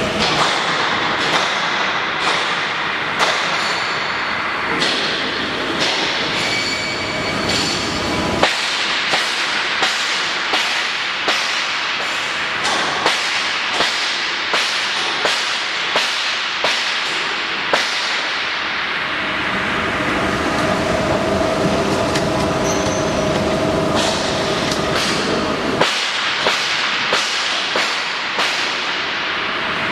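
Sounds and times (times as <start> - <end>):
mixer running: 19.1 - 25.8.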